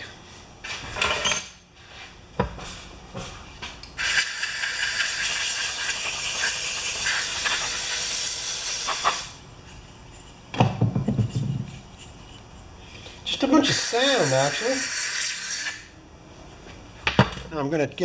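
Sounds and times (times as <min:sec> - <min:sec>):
pressurised spray hissing: 0:04.0 - 0:09.4, 0:13.6 - 0:15.9.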